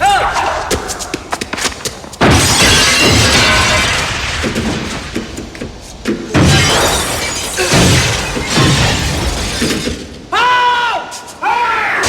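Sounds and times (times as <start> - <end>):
glass smashing: 2.2 - 4.4, 6.4 - 10.1
falling glass debris: 2.2 - 4.6, 6.4 - 10.2.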